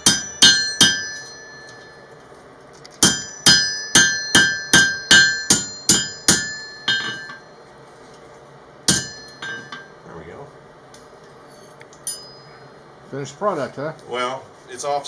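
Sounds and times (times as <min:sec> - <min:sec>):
hammer striking steel on anvil: 0:00.0 - 0:02.1, 0:03.0 - 0:07.5, 0:08.9 - 0:10.0.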